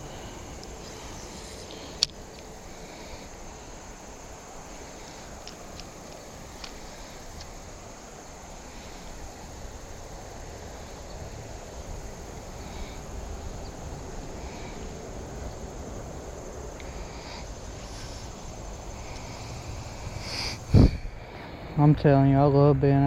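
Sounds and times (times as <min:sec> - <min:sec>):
high insect drone: 0:00.0 - 0:23.0
low hiss and rumble: 0:00.0 - 0:23.0.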